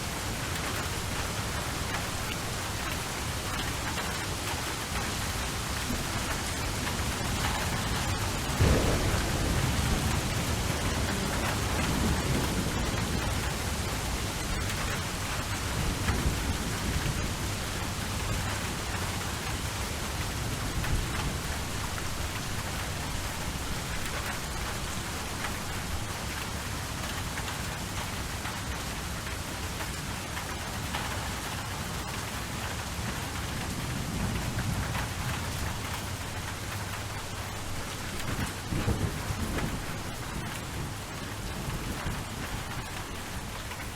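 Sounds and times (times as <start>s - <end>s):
rain pattering: 0.0s - 43.9s
distant thunder rumbling: 5.8s - 18.6s, 33.4s - 43.5s.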